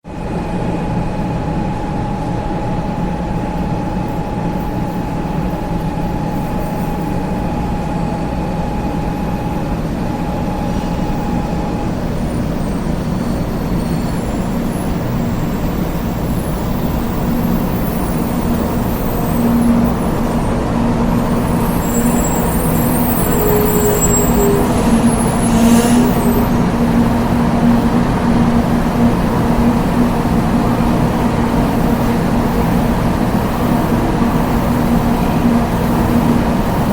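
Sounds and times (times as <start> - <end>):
train rumbling: 0.1 - 36.9
thin high whine: 1.6 - 36.9
high squeals: 5.6 - 36.9
low hum: 7.6 - 30.2.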